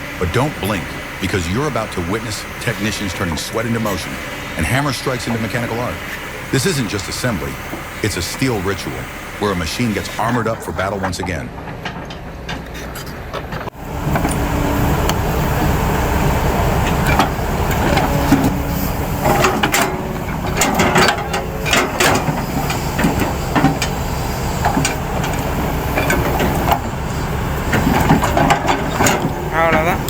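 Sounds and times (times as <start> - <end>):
engine running: 0.0 - 30.0
metal clanks and knocks: 10.4 - 15.2, 16.8 - 30.0.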